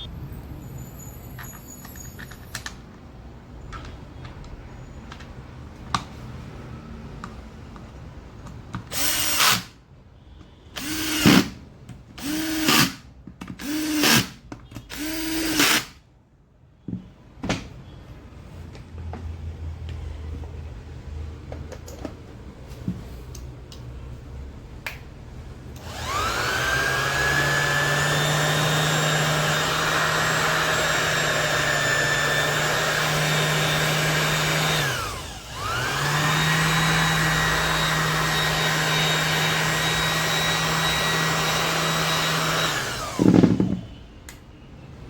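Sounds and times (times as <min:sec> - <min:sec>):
electric sander motor whine: 0:25.8 - 0:43.5.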